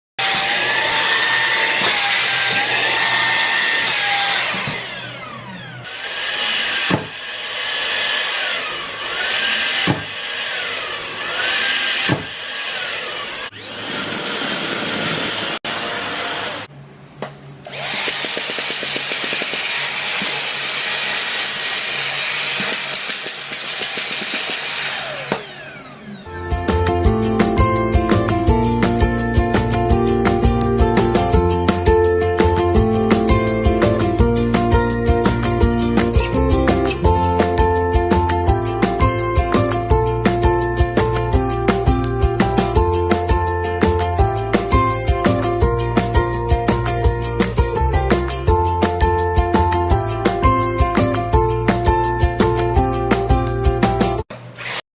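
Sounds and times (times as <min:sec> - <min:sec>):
vacuum cleaner motor whine: 0:00.2 - 0:16.7, 0:17.6 - 0:22.8, 0:23.6 - 0:26.4.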